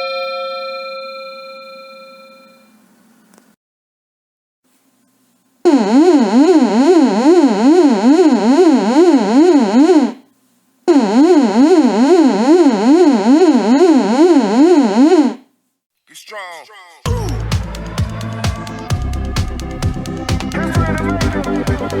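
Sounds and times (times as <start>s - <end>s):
synthesized siren alarm tone: 5.7s - 10.2s, 10.9s - 15.4s.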